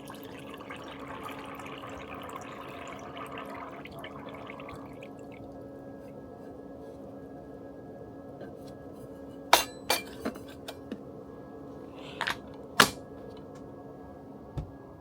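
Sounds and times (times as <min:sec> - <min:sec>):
steady low hum: 0:00.0 - 0:15.0
glassware and dishes clinking: 0:09.5 - 0:10.8.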